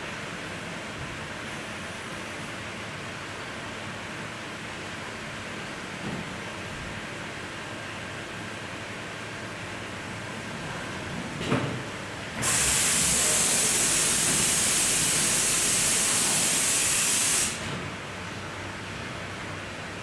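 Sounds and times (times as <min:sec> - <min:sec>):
loud jet hiss: 0:12.4 - 0:17.8.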